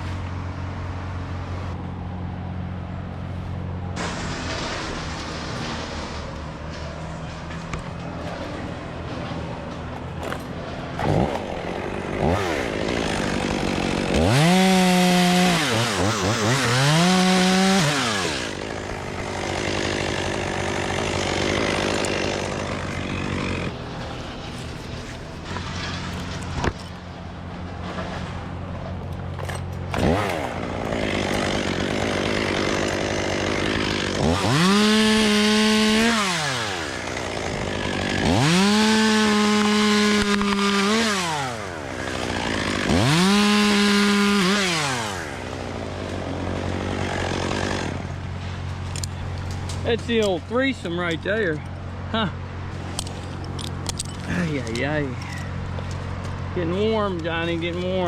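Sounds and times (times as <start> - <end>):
chainsaw engine revving: 11.0 - 23.8, 29.8 - 48.2.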